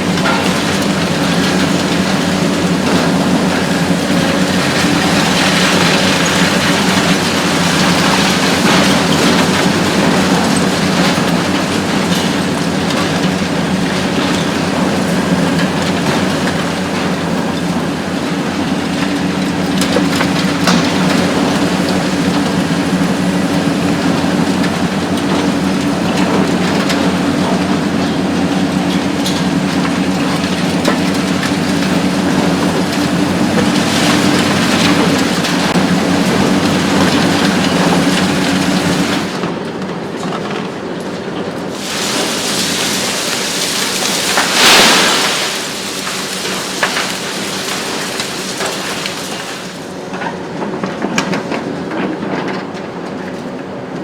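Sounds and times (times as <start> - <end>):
loud crash of falling material: 0.0 - 39.4, 41.6 - 50.0
diesel engine drone: 0.0 - 54.0
concrete breaking and debris falling: 41.7 - 49.9.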